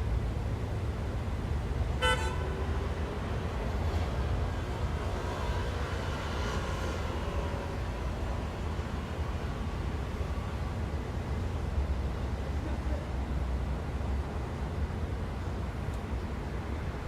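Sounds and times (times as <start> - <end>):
city traffic rumble: 0.0 - 17.0
car horn toot: 2.0 - 2.6.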